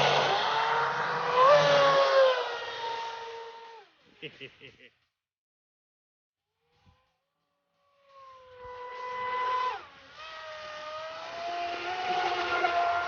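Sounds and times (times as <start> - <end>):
rc boat motor whining: 0.0 - 4.0, 6.7 - 13.0.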